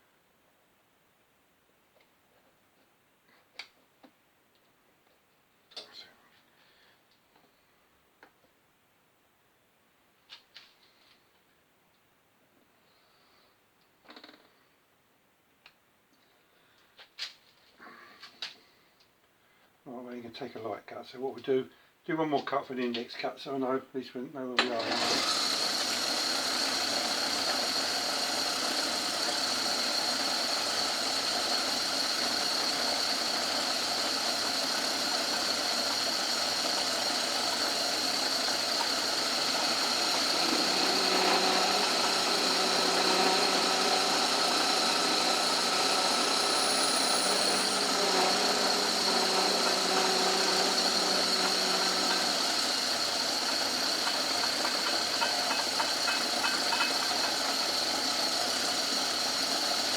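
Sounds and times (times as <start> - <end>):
lathe running with high whine: 24.8 - 59.9.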